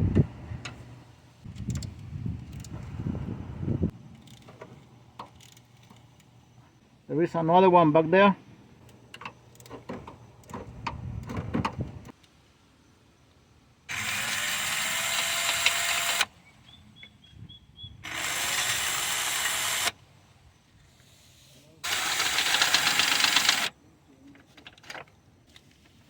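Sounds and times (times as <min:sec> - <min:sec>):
cordless power wrench whining: 0:13.9 - 0:16.3, 0:18.0 - 0:20.0, 0:21.8 - 0:23.8.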